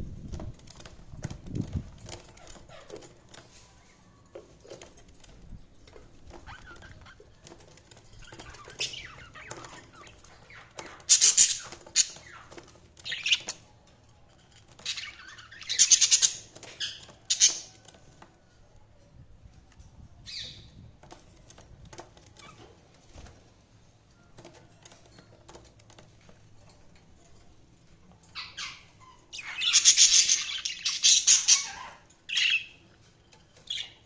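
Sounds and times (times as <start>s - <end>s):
budgies chirping and chattering: 2.1s - 3.6s, 5.9s - 13.7s, 14.4s - 17.8s, 20.3s - 20.8s, 28.1s - 34.0s.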